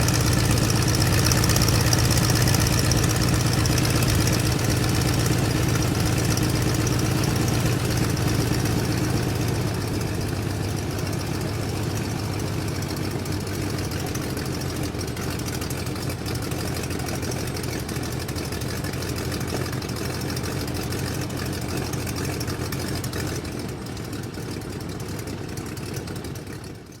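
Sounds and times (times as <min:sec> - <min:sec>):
airplane engine drone: 0:00.0 - 0:13.4.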